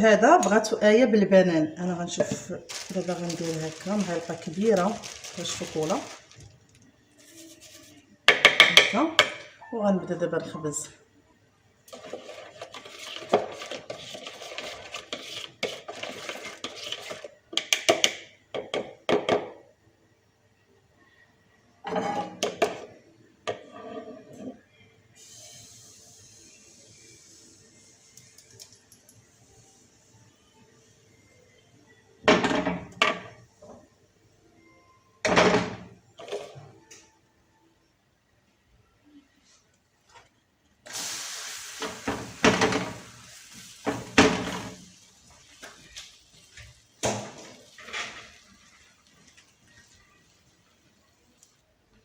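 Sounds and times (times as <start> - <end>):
utensil scraping a bowl: 11.9 - 17.3, 23.5 - 24.6
utensils and pans clanking: 47.1 - 48.4.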